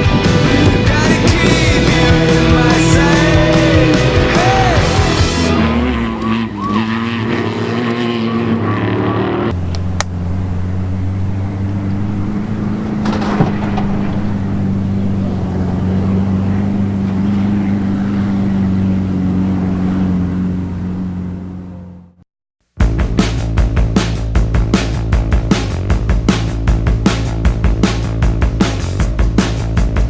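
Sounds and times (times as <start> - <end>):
song: 0.0 - 6.8
race vehicle engine droning: 0.0 - 22.2, 22.8 - 30.0.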